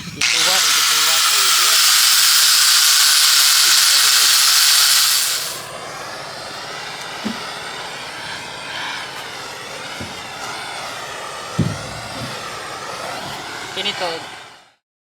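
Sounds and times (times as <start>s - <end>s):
gas torch flame roaring: 0.0s - 14.8s
dull knocks: 11.6s - 12.4s.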